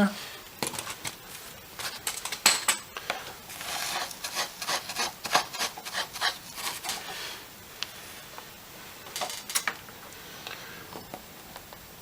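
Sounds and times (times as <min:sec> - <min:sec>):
wire scraping circuit board: 0:03.5 - 0:07.1.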